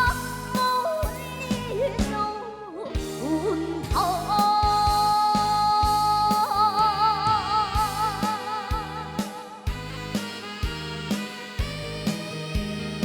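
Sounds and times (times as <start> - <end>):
girl singing: 0.0 - 9.6
karaoke backing track with drum beat: 0.0 - 13.0.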